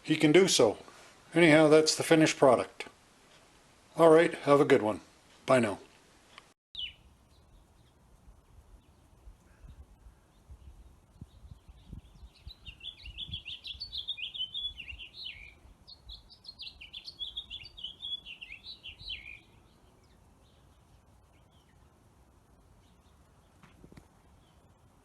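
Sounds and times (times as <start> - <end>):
faint background noise: 0.0 - 25.0
songbird chirping: 5.8 - 25.0.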